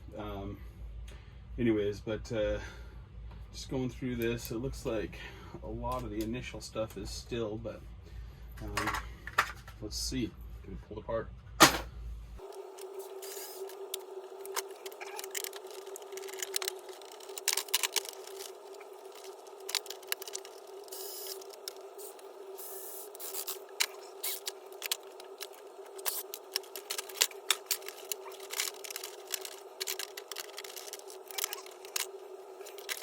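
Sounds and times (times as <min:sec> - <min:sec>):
parts clicking and scraping: 0:08.6 - 0:09.8, 0:12.4 - 0:33.0
steady hum: 0:11.6 - 0:33.0.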